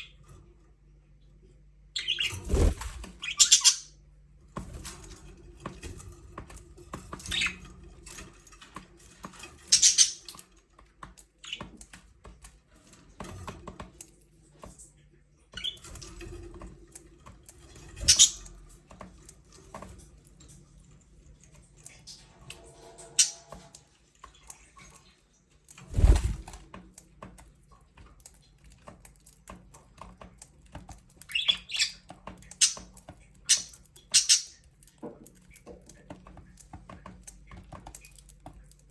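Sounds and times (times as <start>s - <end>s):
budgerigars chirping: 3.2s - 3.9s.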